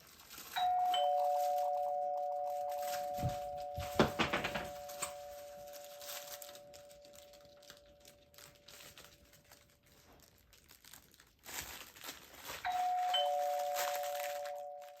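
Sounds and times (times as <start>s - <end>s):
rustling crinkling noise: 0.0s - 15.0s
two-note doorbell chime: 0.6s - 7.4s, 12.7s - 15.0s.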